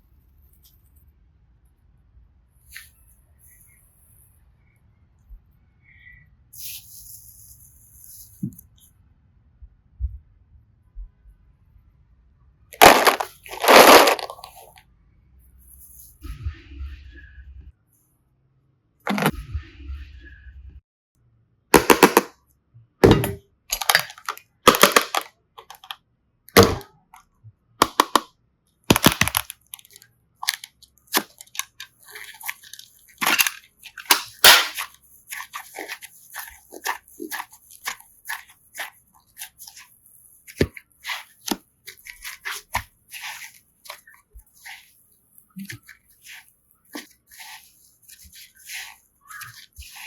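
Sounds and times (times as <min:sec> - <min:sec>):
slime squeezed crackling pops: 0:30.5 - 0:38.5.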